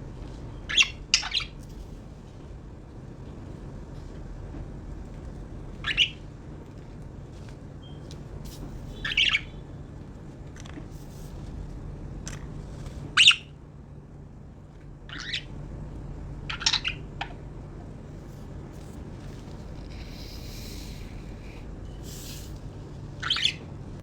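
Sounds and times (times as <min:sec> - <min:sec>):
faint low hum: 0:00.0 - 0:24.0
budgerigars squawking: 0:05.8 - 0:06.2, 0:09.0 - 0:09.6, 0:15.1 - 0:15.5, 0:16.5 - 0:17.3, 0:23.2 - 0:23.6.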